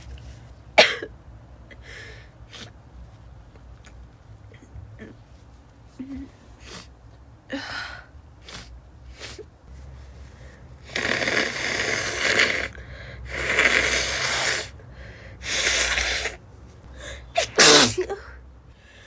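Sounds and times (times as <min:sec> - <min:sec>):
woman sneezing: 0:17.3 - 0:18.3.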